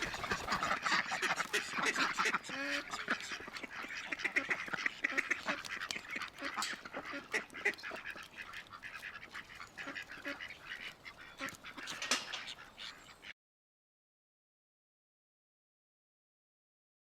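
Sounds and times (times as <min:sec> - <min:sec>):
tropical birds calling: 0:00.0 - 0:13.3.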